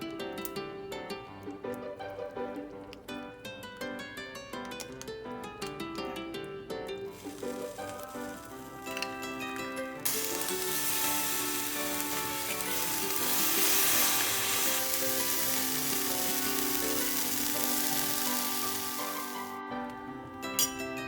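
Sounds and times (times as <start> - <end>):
soft background music: 0.0 - 21.0
food sizzling: 7.0 - 19.6, 20.5 - 21.0.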